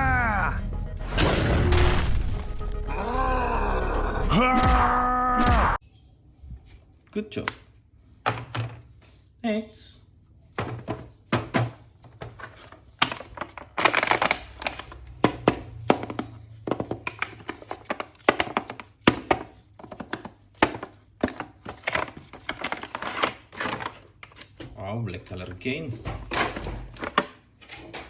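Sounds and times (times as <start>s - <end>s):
toy packaging clicks and knocks: 7.4s - 9.1s, 10.6s - 24.6s, 26.0s - 27.5s
packaging rustling: 10.6s - 24.6s.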